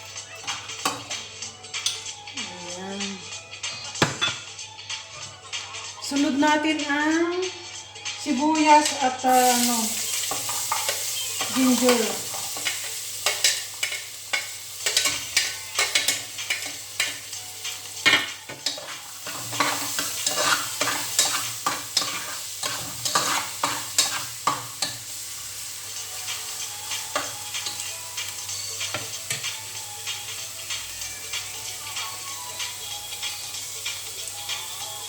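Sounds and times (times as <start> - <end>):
onion sizzling in a pan: 8.8 - 35.0
spatula scraping and clicking on pan: 10.2 - 25.0.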